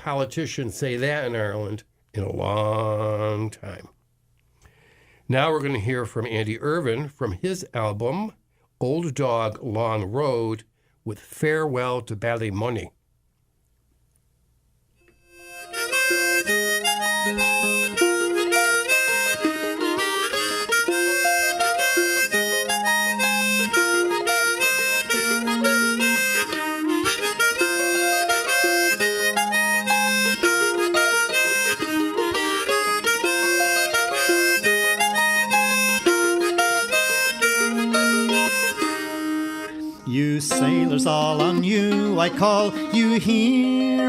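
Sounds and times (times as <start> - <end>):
harmonica melody: 15.0 - 44.0
plucked strings: 15.1 - 44.0.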